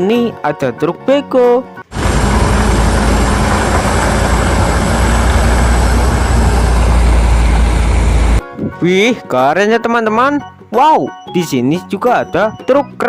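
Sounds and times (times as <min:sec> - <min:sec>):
excavator diesel engine rumbling: 0:01.9 - 0:08.4.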